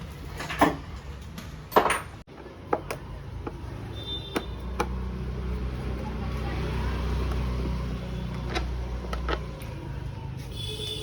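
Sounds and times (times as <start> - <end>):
tools and metal parts clinking: 0.0 - 2.2.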